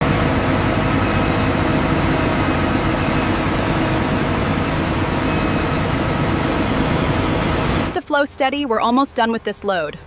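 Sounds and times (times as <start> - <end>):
heavy machinery rumbling: 0.0 - 8.0.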